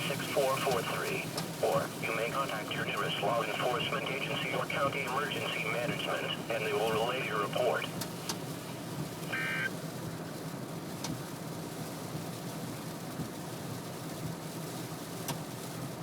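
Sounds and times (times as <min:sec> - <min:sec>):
steady low hum: 0:00.0 - 0:09.7
brief flat tone: 0:09.3 - 0:09.7.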